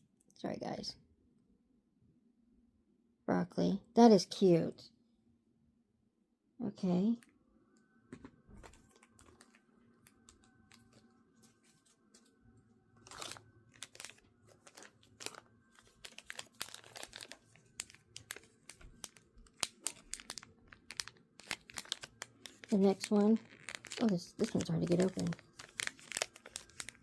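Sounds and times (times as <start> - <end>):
packaging clicks: 8.6 - 11.0, 13.0 - 27.0
plastic packaging crinkling and tearing: 8.6 - 12.2, 13.0 - 27.0.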